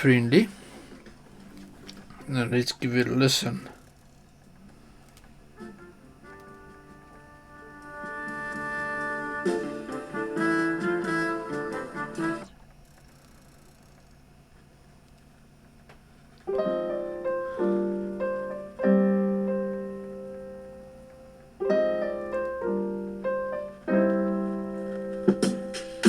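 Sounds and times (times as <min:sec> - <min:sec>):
piano chords through speaker: 0:05.4 - 0:12.6, 0:16.5 - 0:26.0.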